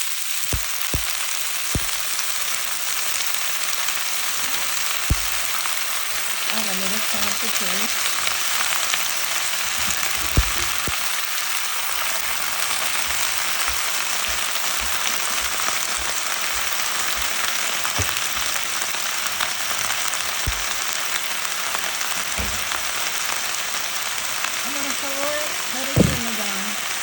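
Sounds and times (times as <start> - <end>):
greens sizzling in a pot: 0.0 - 27.0
short knocks: 26.0 - 26.4.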